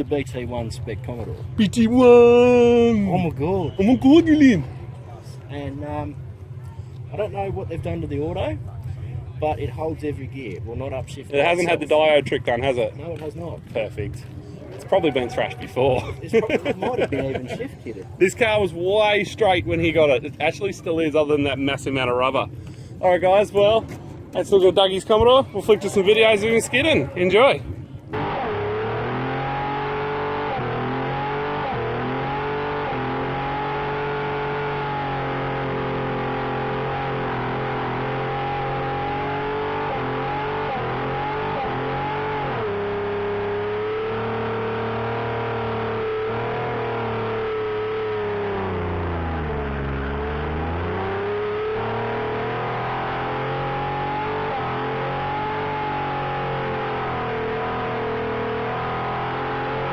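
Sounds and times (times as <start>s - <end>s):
car engine revving high: 28.1s - 59.9s.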